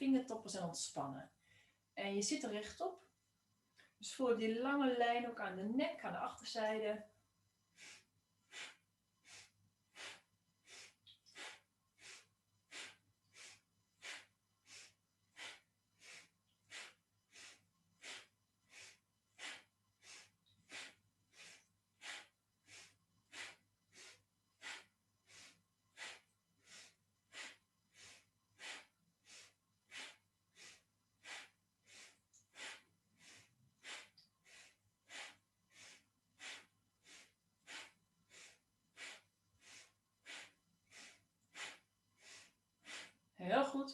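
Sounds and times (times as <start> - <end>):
rapid rhythmic breathing: 7.7 - 43.4.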